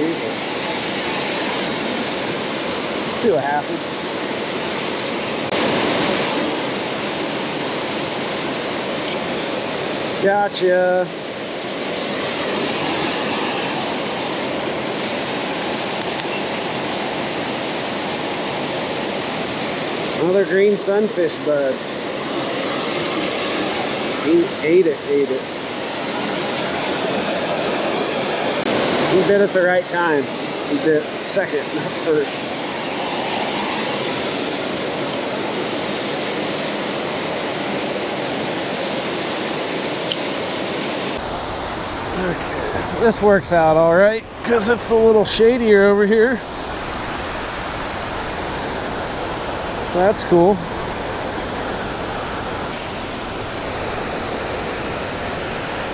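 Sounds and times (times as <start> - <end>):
waterfall rushing: 0.0 - 10.7, 41.1 - 55.9
water rushing over waterfall: 0.0 - 55.9.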